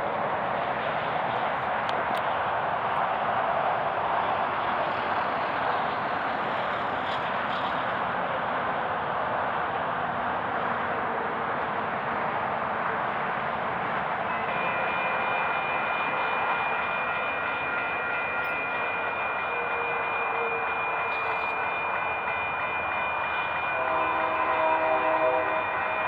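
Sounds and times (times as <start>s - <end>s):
freight train rumbling: 0.0s - 26.0s
locomotive horn: 14.0s - 26.0s.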